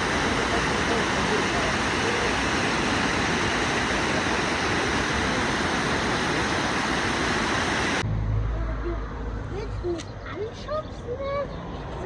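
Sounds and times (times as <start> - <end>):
waterfall rushing: 0.0 - 8.0.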